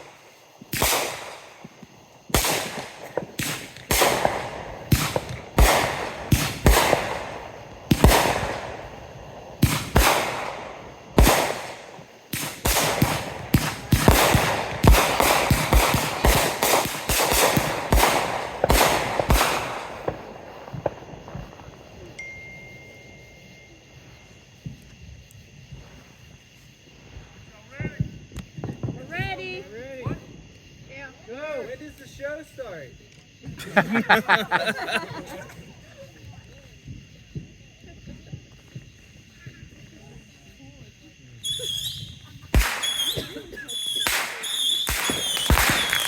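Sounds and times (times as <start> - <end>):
fireworks banging: 0.0 - 30.6, 33.4 - 40.5, 41.4 - 46.0.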